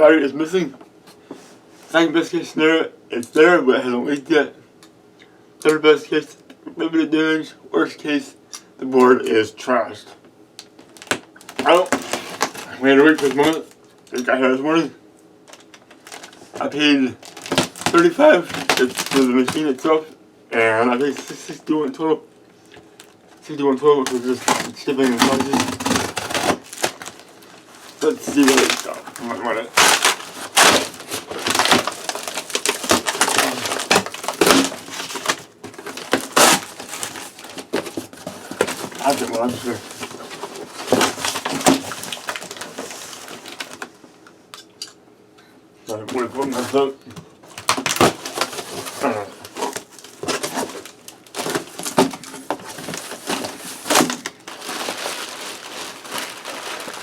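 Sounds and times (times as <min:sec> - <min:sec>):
packing tape ripping: 0:10.9 - 0:13.7, 0:17.2 - 0:19.8, 0:24.1 - 0:43.9, 0:47.5 - 0:57.0
cardboard crunching and scraping: 0:11.0 - 0:13.7, 0:17.2 - 0:19.8, 0:24.0 - 0:43.8, 0:46.0 - 0:46.9, 0:47.5 - 0:57.0.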